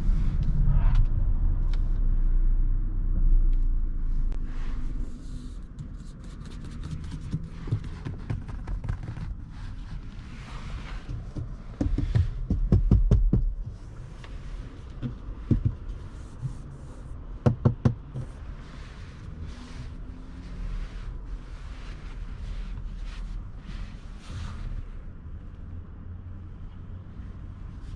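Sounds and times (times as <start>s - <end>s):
low rumble: 0.0s - 5.7s.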